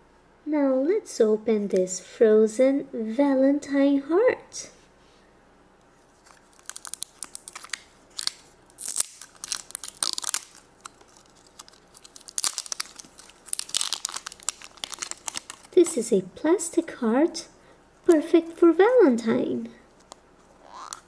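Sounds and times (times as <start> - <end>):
plastic wrapper crinkling: 6.1 - 16.1, 19.9 - 21.0.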